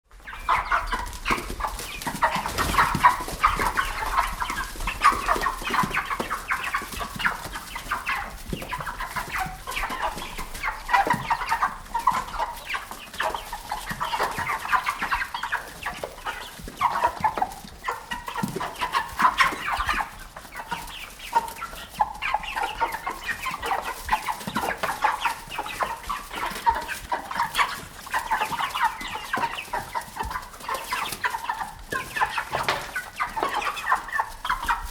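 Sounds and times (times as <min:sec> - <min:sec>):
chickens clucking: 0:00.0 - 0:34.9.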